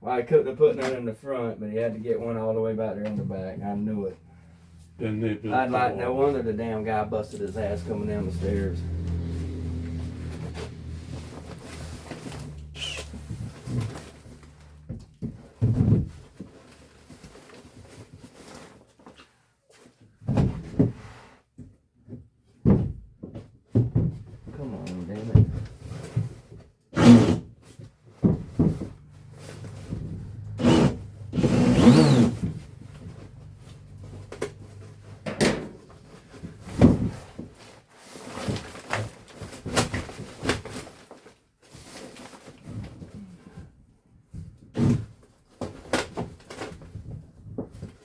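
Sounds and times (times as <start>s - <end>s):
dull knocks and bangs on ductwork: 22.6s - 24.4s.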